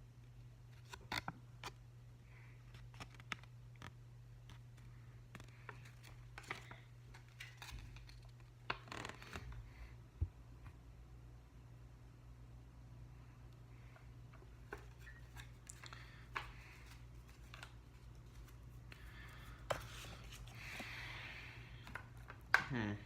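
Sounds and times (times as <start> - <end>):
steady low hum: 0.0 - 23.0
paper and plastic pen handling: 2.7 - 9.6, 14.3 - 21.0.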